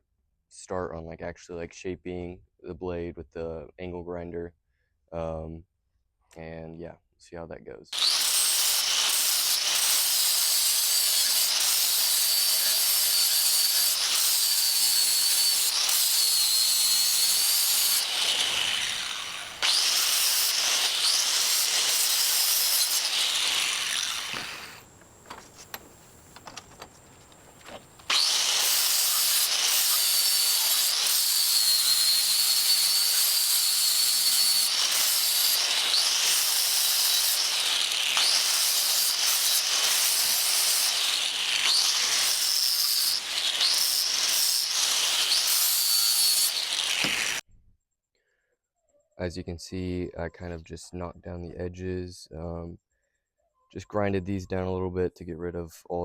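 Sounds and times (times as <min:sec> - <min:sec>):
angle grinder grinding steel: 0:08.0 - 0:47.4.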